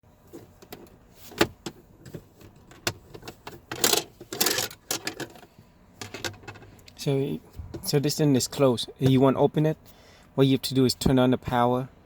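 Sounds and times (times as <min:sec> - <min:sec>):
rustling and rattling: 0:00.2 - 0:06.7
handling clicks and knocks: 0:00.4 - 0:06.7.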